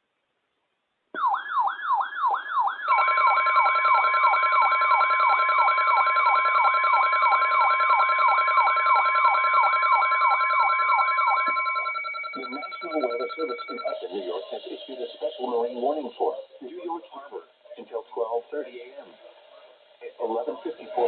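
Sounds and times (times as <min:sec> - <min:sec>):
siren-like alarm sweeping down: 0:01.2 - 0:14.0
steady high tone: 0:02.8 - 0:16.1.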